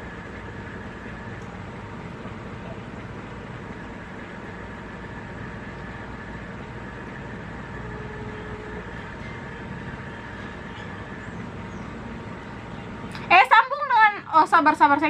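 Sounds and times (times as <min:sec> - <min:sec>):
low rumble and hiss: 0:00.0 - 0:15.0
faint tone: 0:07.6 - 0:09.6.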